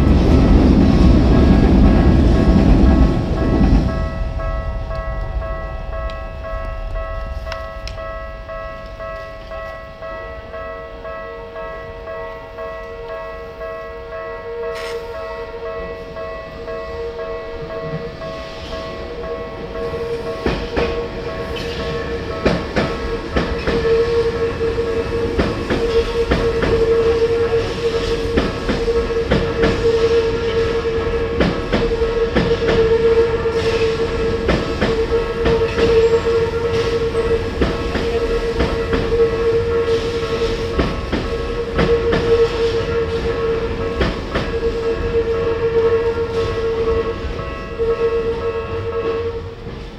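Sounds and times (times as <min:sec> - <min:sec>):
steady warning tone: 0:00.0 - 0:49.8
train rumble: 0:00.0 - 0:49.9
train wheels clacking over rail joints: 0:19.8 - 0:45.1.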